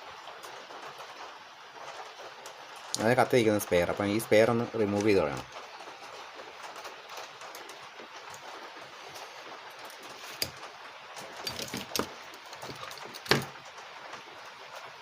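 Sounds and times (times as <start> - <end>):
faint steady hiss: 0.0 - 15.0
tools clicking on a workbench: 11.2 - 13.5.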